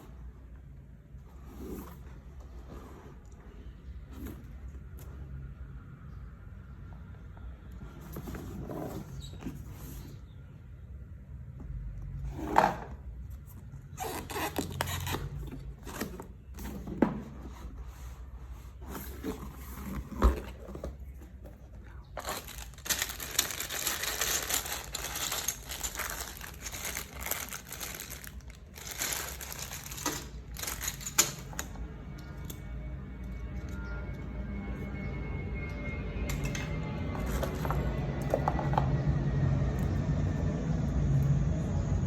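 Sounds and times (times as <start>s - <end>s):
packaging crinkling and rustling: 18.9s - 31.7s
background music: 31.4s - 41.6s.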